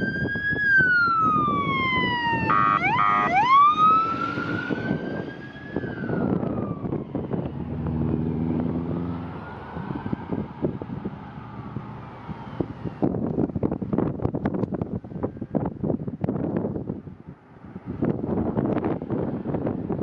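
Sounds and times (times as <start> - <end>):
fire engine siren wailing: 0.0 - 13.3
diesel engine rumbling: 0.2 - 20.0
horn blasts: 2.5 - 3.4.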